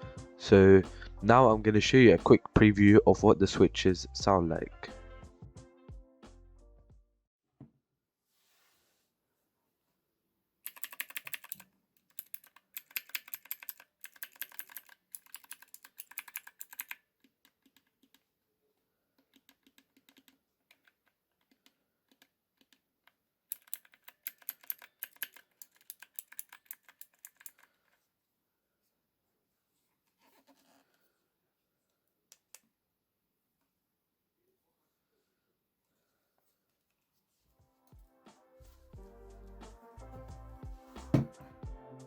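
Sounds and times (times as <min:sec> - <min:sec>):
clicky keyboard keys pressed: 0:10.7 - 0:17.0, 0:23.5 - 0:27.7.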